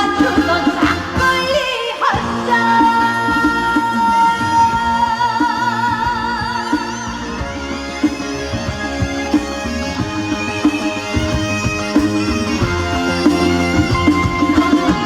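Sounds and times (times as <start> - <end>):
woman singing: 0.0 - 7.7
band accompaniment: 0.0 - 15.0.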